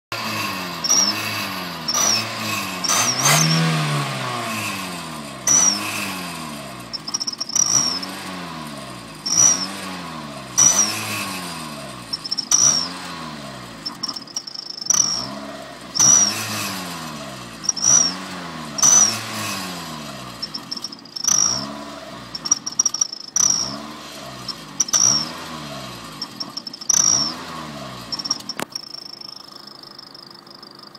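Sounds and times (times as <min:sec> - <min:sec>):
car engine revving: 0:00.1 - 0:30.2
exhaust whistle: 0:00.3 - 0:04.6, 0:05.4 - 0:08.6, 0:09.2 - 0:14.2.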